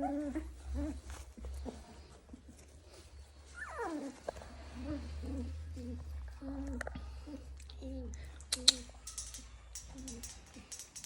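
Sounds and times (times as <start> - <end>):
puppy whimpering: 0.0 - 2.5, 3.5 - 8.8
puppy whining: 0.0 - 10.5.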